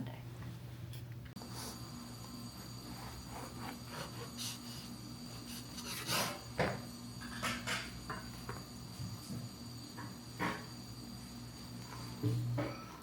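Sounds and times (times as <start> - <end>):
steady low hum: 0.0 - 13.0
objects rubbing and scraping: 2.9 - 6.5.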